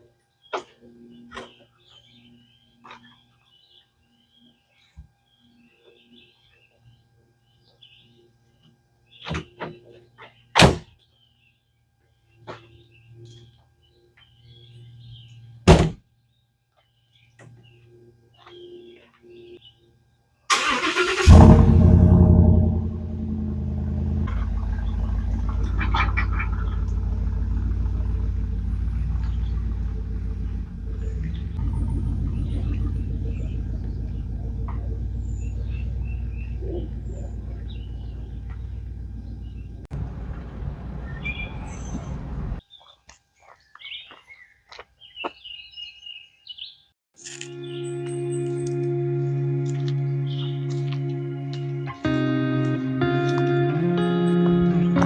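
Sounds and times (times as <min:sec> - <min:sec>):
truck engine idling: 0:20.6 - 0:42.6
low rumbling noise: 0:21.2 - 0:42.6, 0:48.1 - 0:52.6
birds chirping and calling: 0:24.3 - 0:46.8, 0:47.6 - 0:48.8, 0:49.7 - 0:51.9.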